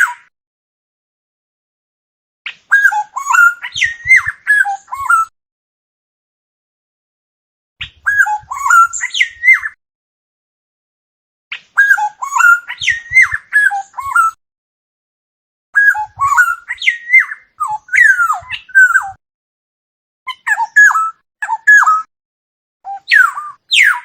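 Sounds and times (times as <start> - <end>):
bird whistling song: 2.5 - 5.3, 7.8 - 9.8, 11.5 - 14.4, 15.8 - 19.2, 20.3 - 22.1, 22.9 - 24.0.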